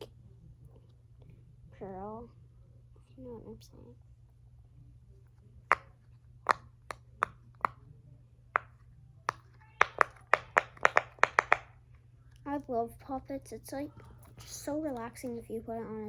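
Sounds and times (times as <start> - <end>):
silicone fidget toy popping: 5.7 - 7.8, 8.6 - 11.7.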